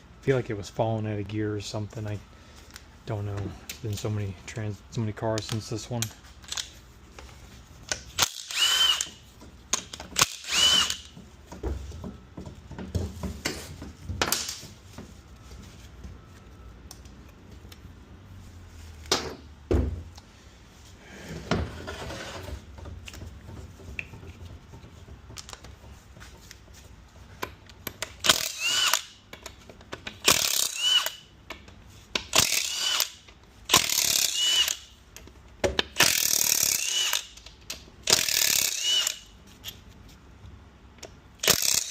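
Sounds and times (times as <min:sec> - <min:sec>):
cordless power tool whining: 0:08.2 - 0:09.2, 0:10.2 - 0:11.1.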